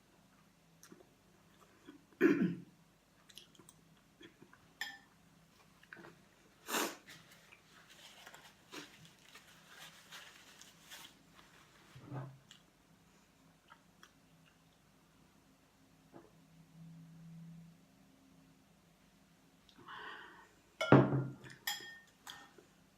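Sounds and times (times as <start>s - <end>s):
person chewing food: 3.2s - 4.7s.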